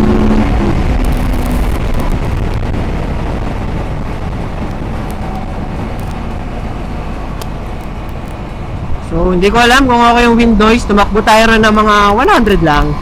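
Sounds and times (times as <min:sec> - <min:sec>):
motorcycle engine running low: 0:00.0 - 0:13.0
wind noise over microphone: 0:00.0 - 0:13.0.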